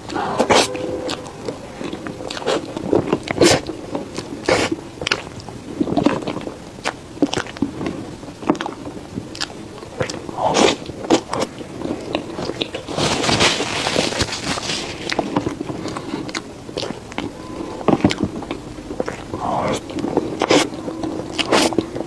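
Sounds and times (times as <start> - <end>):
chewing and biting cake: 1.8 - 22.0.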